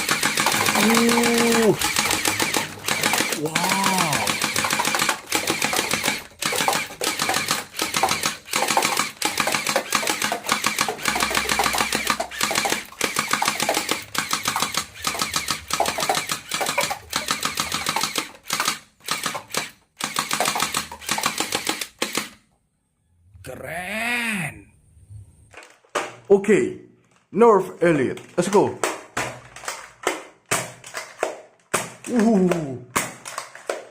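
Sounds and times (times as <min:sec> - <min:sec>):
toy gun rattling clicks: 0:00.0 - 0:22.4, 0:29.2 - 0:30.1.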